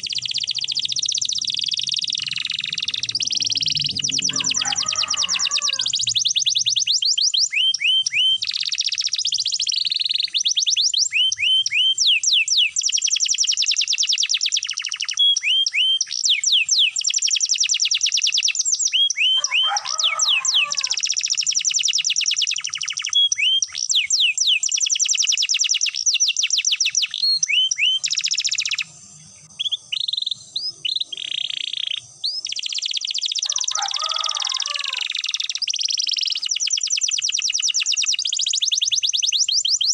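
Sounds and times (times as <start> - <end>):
canary trilling: 0.0 - 13.0, 14.6 - 39.9
canary warbled phrase: 4.0 - 6.0, 19.2 - 21.0.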